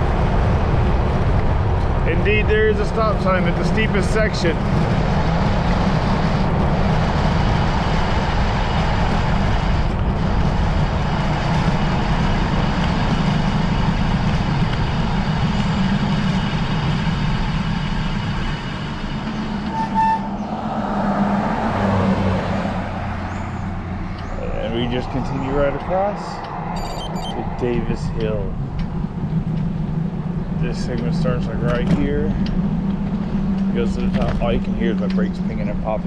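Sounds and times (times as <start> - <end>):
bicycle tyre rumble: 0.0 - 26.7
wind rushing over microphone: 0.0 - 36.0
high brake squeal: 19.6 - 20.6, 26.7 - 27.4.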